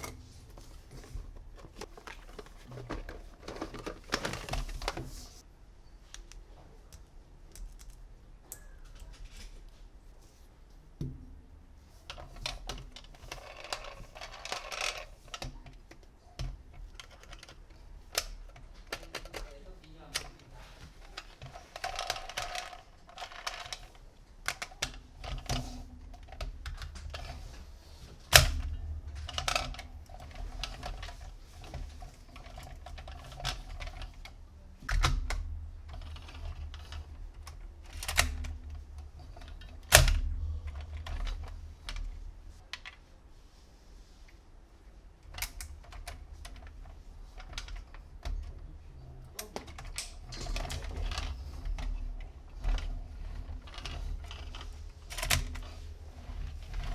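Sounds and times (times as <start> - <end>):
plastic toys clicking and tapping: 0.0 - 5.1, 12.0 - 42.1
packaging rustle: 0.0 - 5.4.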